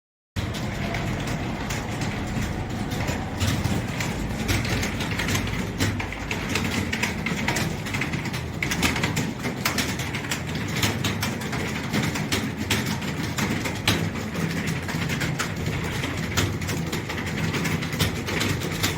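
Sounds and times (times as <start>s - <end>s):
low rumble: 0.4s - 7.0s
rapid irregular mechanical clicking: 0.4s - 18.9s.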